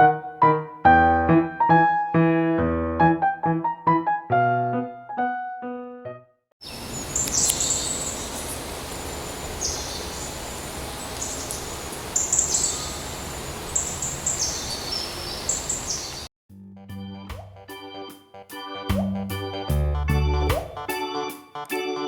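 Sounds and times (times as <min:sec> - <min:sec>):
background hiss: 0:06.6 - 0:16.3
young animal chirping: 0:06.6 - 0:16.3
organ music: 0:16.8 - 0:22.0.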